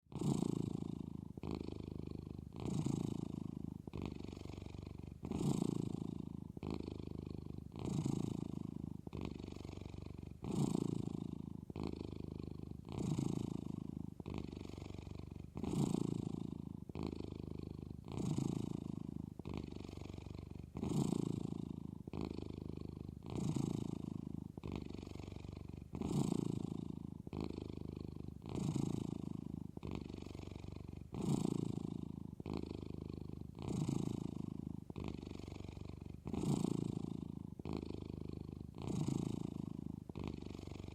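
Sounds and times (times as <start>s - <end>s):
cat purring: 0.0s - 40.9s.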